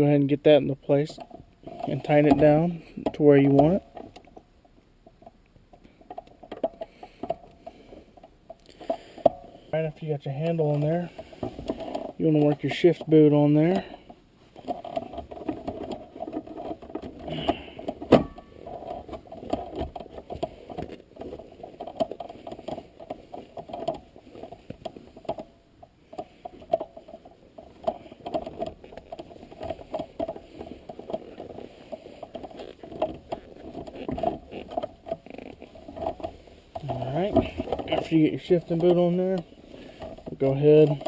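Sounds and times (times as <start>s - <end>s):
shift boot rustling and creaking: 0.0s - 41.0s.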